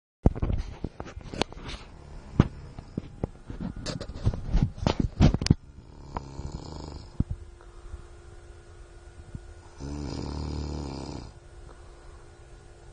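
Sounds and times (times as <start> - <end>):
man snoring: 5.8 - 7.2, 9.7 - 11.4.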